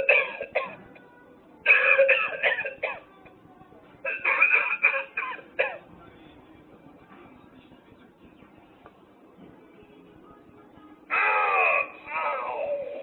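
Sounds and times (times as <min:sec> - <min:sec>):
recorded hacking coughs: 0:00.0 - 0:00.8, 0:01.7 - 0:03.1, 0:04.1 - 0:05.9.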